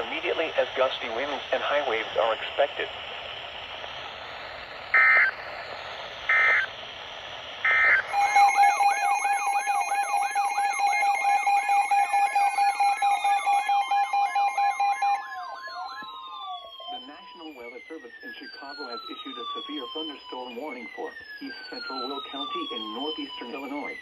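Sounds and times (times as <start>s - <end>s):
electronic siren-like alarm: 4.5s - 6.8s, 7.4s - 24.0s
digital data bursts: 4.9s - 6.8s, 7.6s - 16.0s.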